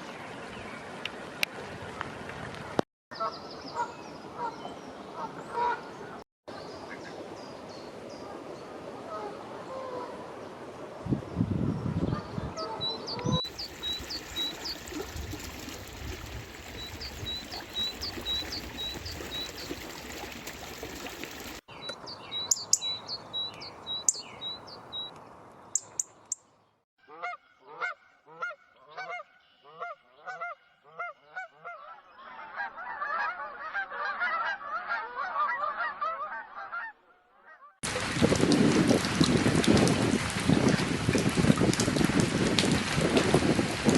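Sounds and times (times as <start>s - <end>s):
waterfowl honking: 5.2s - 5.9s, 27.1s - 37.8s
small bird chirping: 21.8s - 25.1s, 25.7s - 26.4s.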